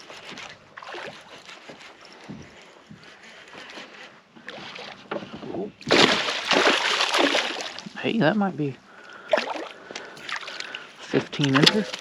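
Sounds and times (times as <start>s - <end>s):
water movement: 0.0s - 8.2s, 8.8s - 12.0s.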